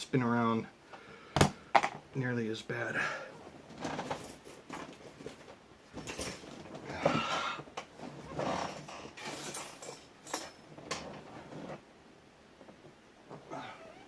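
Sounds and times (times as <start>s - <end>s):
rummaging through tools: 3.4s - 11.8s.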